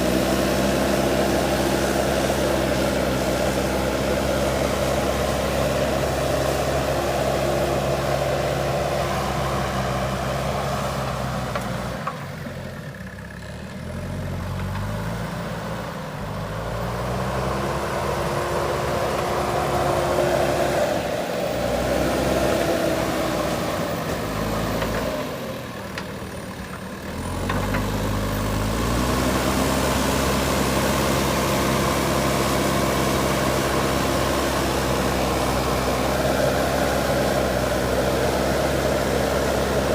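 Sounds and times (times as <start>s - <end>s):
diesel engine at high revs: 0.0s - 39.9s.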